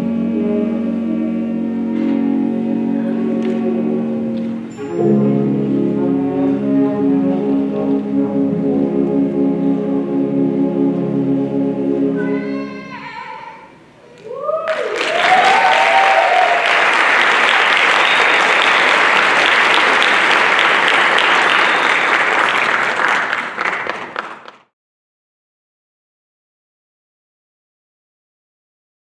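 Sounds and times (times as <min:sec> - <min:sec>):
concert band held chord: 0:00.0 - 0:14.0
whoops and cheers: 0:14.2 - 0:19.0
audience applause: 0:14.6 - 0:24.7.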